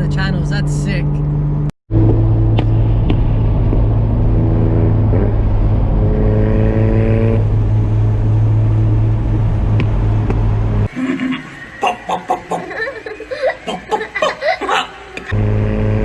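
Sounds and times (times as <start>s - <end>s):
car engine droning: 0.0s - 13.2s, 15.0s - 16.0s
higher engine note: 1.1s - 11.1s, 15.2s - 16.0s.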